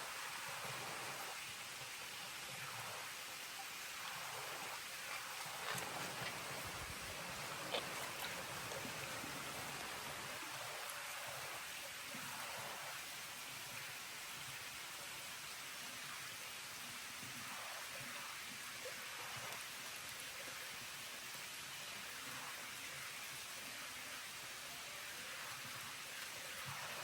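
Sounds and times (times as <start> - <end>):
water hissing: 2.6 - 13.0.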